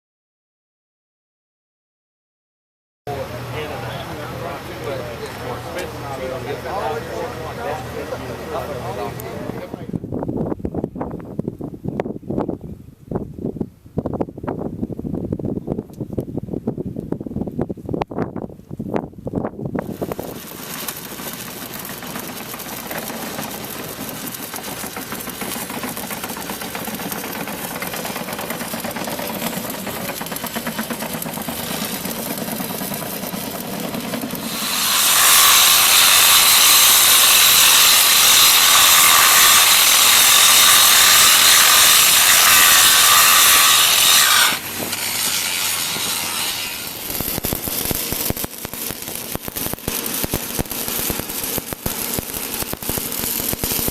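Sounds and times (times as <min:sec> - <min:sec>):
power tool grinding: 0:19.8 - 0:53.9
welding crackling hiss: 0:28.8 - 0:53.9.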